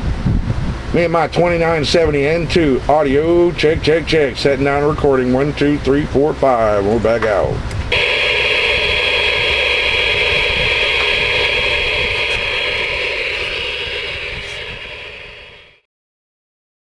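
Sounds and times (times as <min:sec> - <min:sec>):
radio static hiss: 0:07.9 - 0:15.8
thin high whistle: 0:07.9 - 0:15.8.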